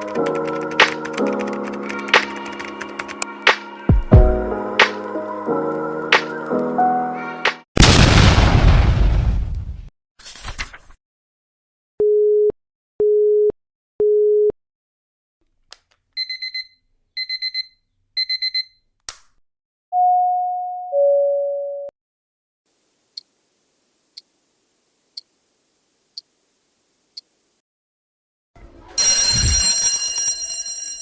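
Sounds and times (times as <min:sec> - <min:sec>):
digital alarm clock beeping: 0:16.2 - 0:18.8.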